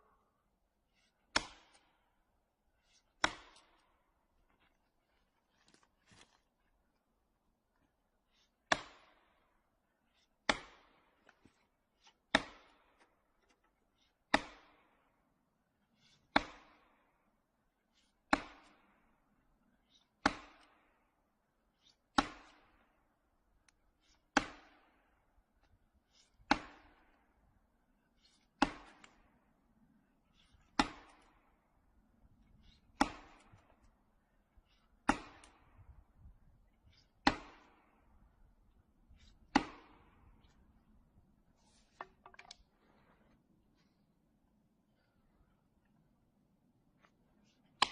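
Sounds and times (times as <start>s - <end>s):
heavy chopping on wood: 1.3s - 1.8s, 3.2s - 3.8s, 8.7s - 9.1s, 10.5s - 11.0s, 12.3s - 12.8s, 14.3s - 14.7s, 16.3s - 16.8s, 18.3s - 18.8s, 20.2s - 20.6s, 24.3s - 24.8s, 26.5s - 27.0s, 28.6s - 29.1s, 30.8s - 31.2s, 33.0s - 33.7s, 35.0s - 35.6s, 37.2s - 37.7s, 39.5s - 40.1s.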